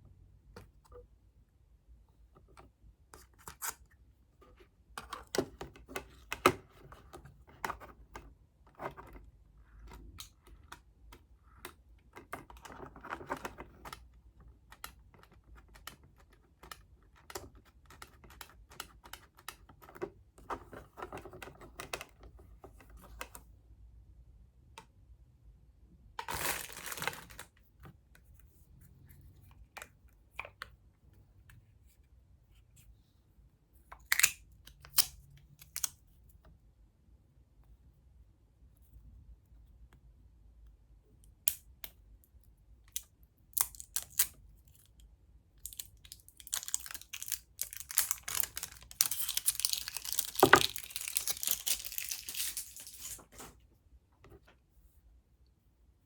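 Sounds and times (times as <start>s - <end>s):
cardboard packaging rustling: 26.2s - 27.5s, 46.3s - 53.6s
tape tearing: 46.4s - 53.3s.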